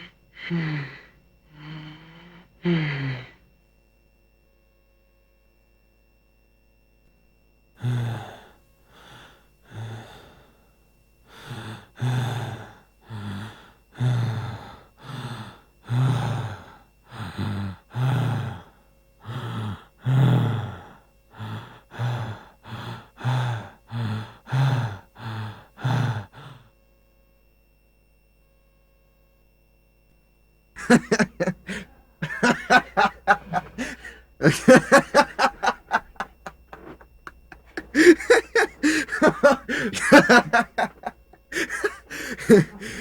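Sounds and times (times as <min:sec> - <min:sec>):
heavy panting breaths: 0:07.8 - 0:10.7, 0:11.3 - 0:26.7, 0:30.8 - 0:43.0.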